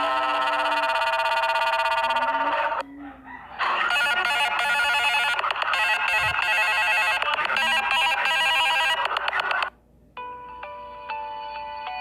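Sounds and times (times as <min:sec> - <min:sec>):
phone ringtone: 0:00.0 - 0:02.8, 0:03.6 - 0:09.7.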